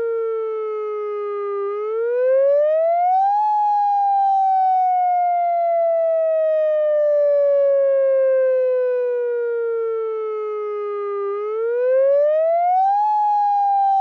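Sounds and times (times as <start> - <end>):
electronic siren wailing: 0.0 - 14.0.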